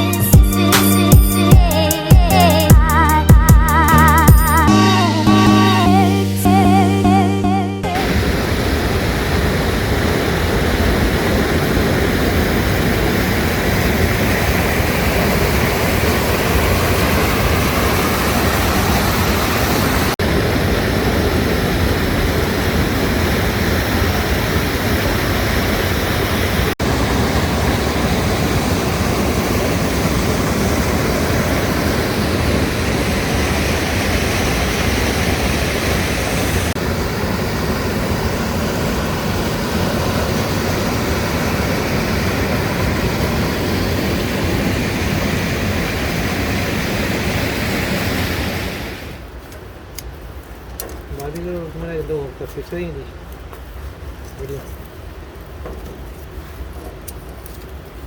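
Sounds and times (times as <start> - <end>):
waterfall gushing: 8.0 - 53.3.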